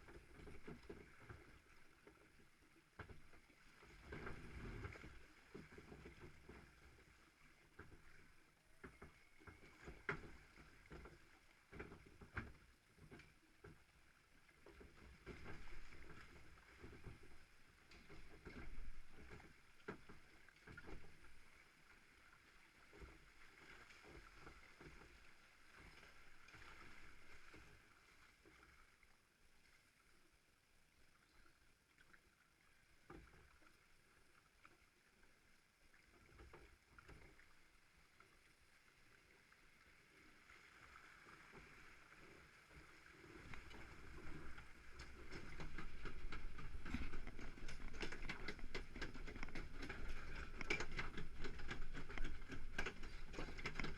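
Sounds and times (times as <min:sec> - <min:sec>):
water flowing in channel: 0:00.0 - 0:53.9
boat knocking: 0:43.5 - 0:53.9.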